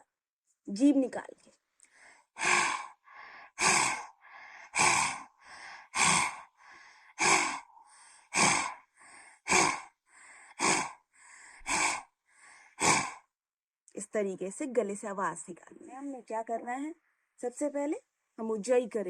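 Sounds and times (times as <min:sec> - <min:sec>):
quiet inhale: 0:01.8 - 0:13.3
forceful open-mouthed exhalations: 0:01.9 - 0:13.3.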